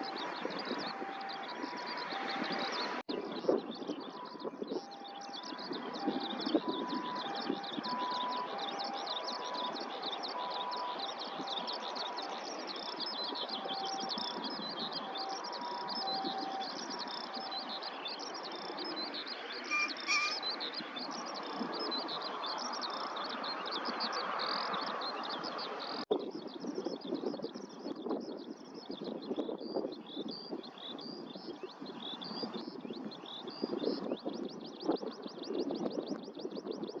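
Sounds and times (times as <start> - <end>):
small birds trilling: 0.0 - 37.0
pheasant crowing: 19.6 - 20.6.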